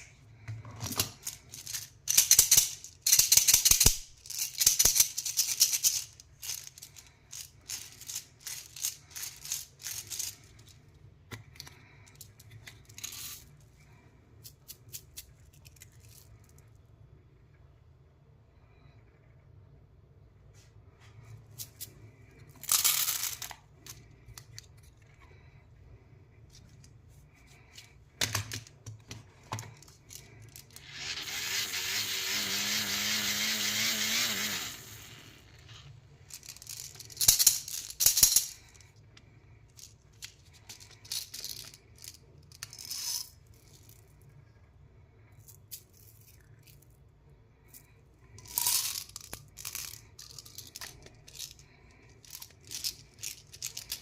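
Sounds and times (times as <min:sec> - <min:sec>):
sweets rattling: 0:00.9 - 0:10.9, 0:47.8 - 0:54.0.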